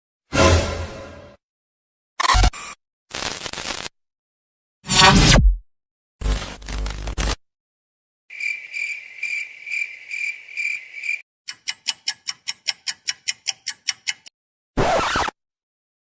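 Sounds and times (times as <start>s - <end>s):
sharp ticks: 11.5s - 14.3s.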